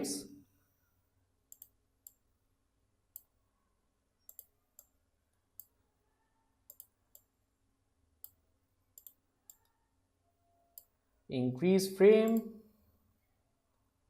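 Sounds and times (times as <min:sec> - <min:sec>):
computer mouse clicking: 0:01.5 - 0:02.2, 0:03.1 - 0:03.3, 0:04.2 - 0:05.0, 0:06.6 - 0:07.3, 0:08.2 - 0:09.8.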